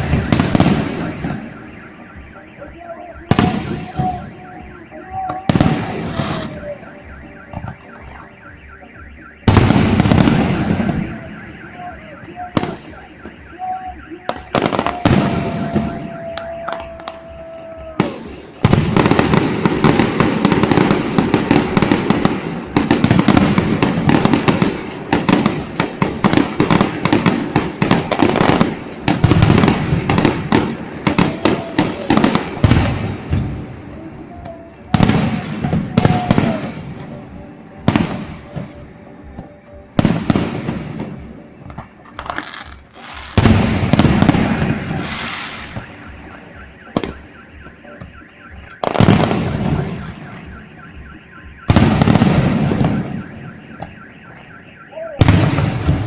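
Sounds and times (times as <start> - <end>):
fireworks crackling and booming: 0.0 - 56.0.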